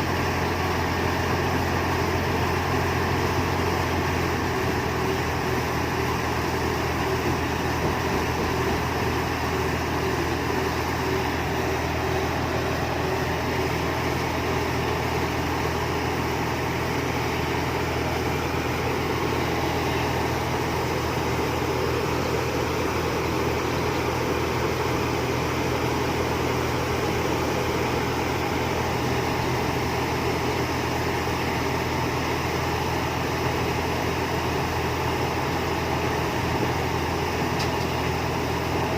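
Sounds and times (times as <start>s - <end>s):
combine harvester drone: 0.0s - 38.9s.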